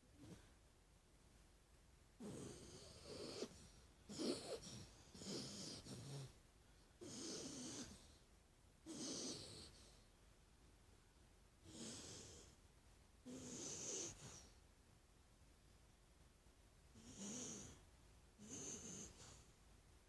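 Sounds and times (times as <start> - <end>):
dog snoring: 2.2 - 6.4, 7.0 - 8.2, 8.8 - 10.0, 11.6 - 12.6, 13.2 - 14.5, 16.9 - 17.8, 18.4 - 19.5.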